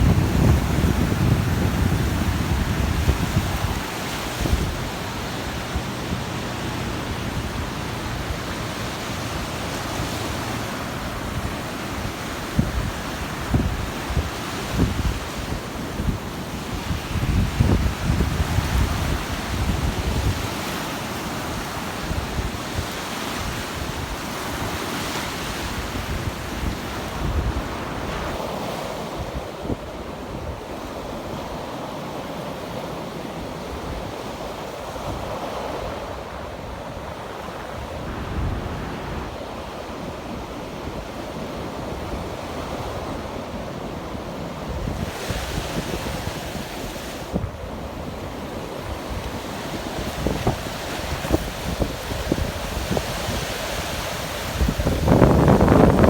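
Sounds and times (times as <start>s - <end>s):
wind buffeting microphone: 0.0s - 31.4s, 44.0s - 56.0s
surf breaking on a beach: 0.0s - 56.0s.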